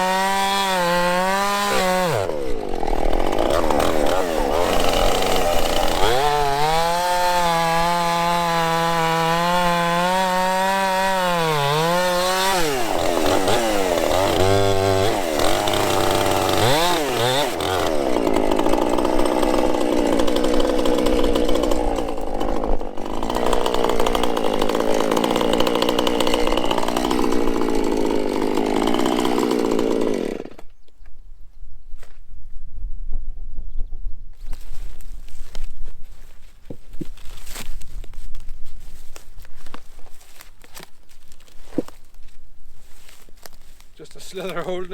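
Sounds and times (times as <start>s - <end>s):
chainsaw cutting wood: 0.0s - 30.8s, 38.9s - 44.9s.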